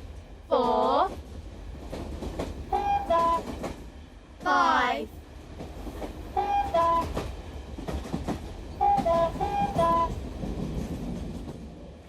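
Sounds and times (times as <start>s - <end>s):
train wheels clickety-clack: 0.0s - 12.0s
two-tone train whistle: 2.7s - 3.6s, 6.3s - 7.2s, 8.8s - 10.2s.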